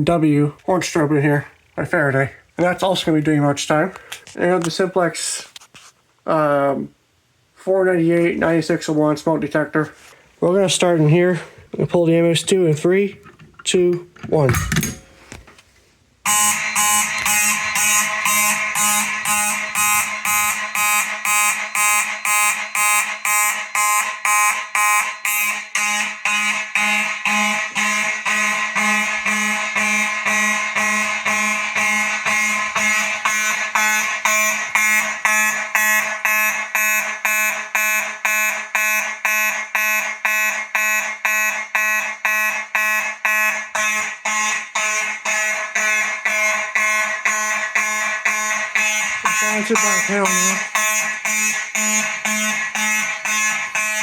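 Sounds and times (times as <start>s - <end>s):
fire alarm horns: 16.2s - 54.0s.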